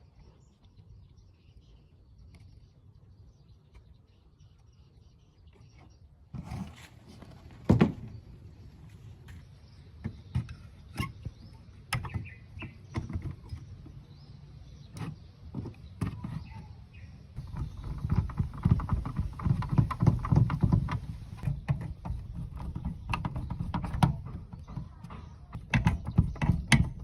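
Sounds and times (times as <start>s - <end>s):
clicks and knocks on hard surface: 17.4s - 27.0s.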